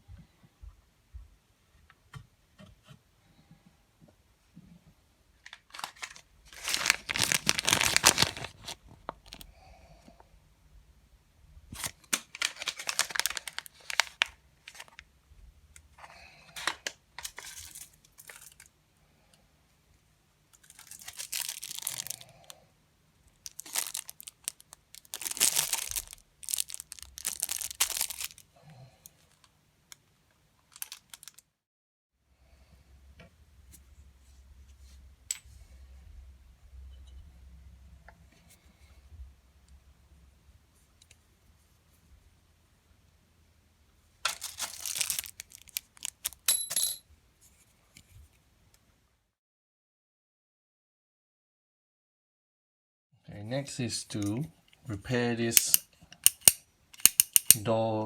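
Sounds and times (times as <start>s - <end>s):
handling noises: 5.4s - 9.4s, 11.7s - 15.0s, 23.5s - 28.4s, 44.2s - 47.0s
packaging tearing and crinkling: 5.4s - 9.4s, 11.8s - 15.0s, 20.6s - 22.5s, 23.4s - 28.4s, 30.7s - 31.4s, 44.3s - 46.5s.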